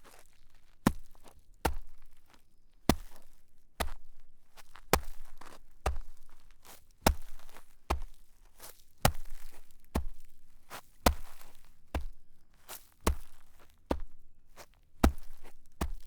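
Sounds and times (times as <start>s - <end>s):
sharp thumps with rustling crunch: 15.0s - 16.0s.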